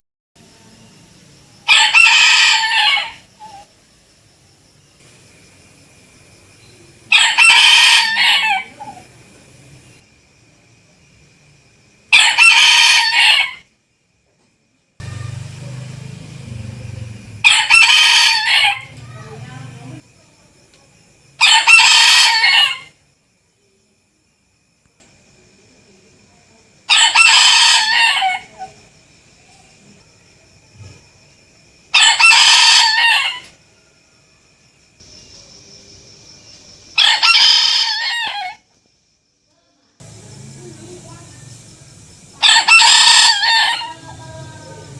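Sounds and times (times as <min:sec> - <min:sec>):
faint high-pitched whine: 0:00.4 - 0:12.4, 0:22.3 - 0:32.0, 0:32.9 - 0:37.2
rooster crowing: 0:01.6 - 0:03.7, 0:07.1 - 0:09.2, 0:12.1 - 0:13.7, 0:15.0 - 0:19.8, 0:21.4 - 0:23.0, 0:26.9 - 0:28.8, 0:31.9 - 0:34.4, 0:36.9 - 0:38.7, 0:42.4 - 0:44.9.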